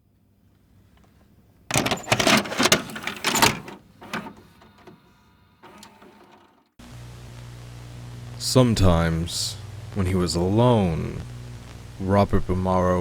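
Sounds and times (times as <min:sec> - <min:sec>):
metallic clanks and knocks: 0:01.7 - 0:05.0
low machine hum: 0:05.6 - 0:13.0.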